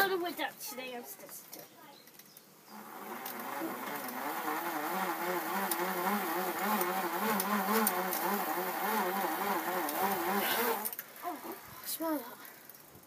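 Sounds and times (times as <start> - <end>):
power tool motor humming: 2.7 - 11.0.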